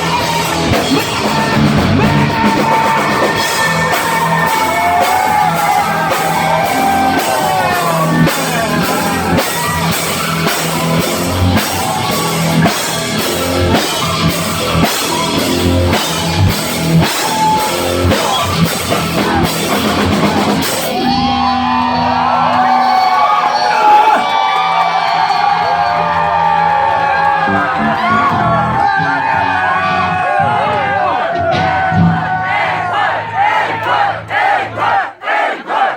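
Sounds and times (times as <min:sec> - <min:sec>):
drum hits: 0:00.0 - 0:21.1, 0:31.2 - 0:32.6
electric guitar: 0:00.0 - 0:23.6.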